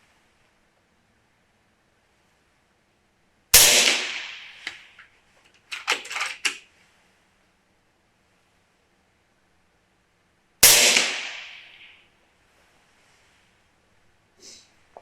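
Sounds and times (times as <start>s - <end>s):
air rifle shot: 3.6s - 5.0s, 10.6s - 12.0s
rifle action clicking: 5.5s - 6.6s.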